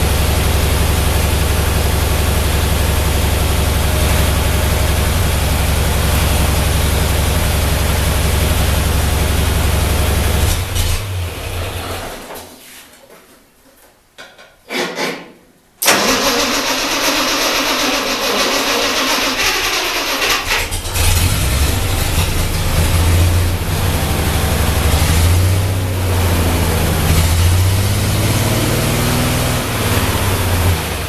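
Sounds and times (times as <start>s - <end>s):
tractor engine running: 0.0s - 12.1s, 15.8s - 31.0s
starter cranking engine: 15.8s - 23.1s.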